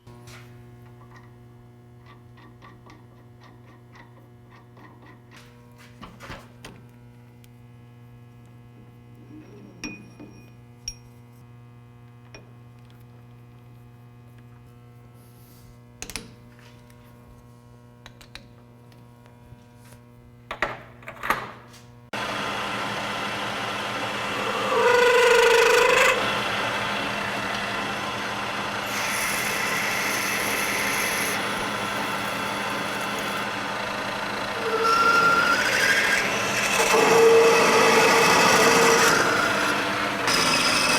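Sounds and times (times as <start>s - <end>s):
machine motor humming: 22.2s - 40.9s
metal cutting with squeals: 23.7s - 40.9s.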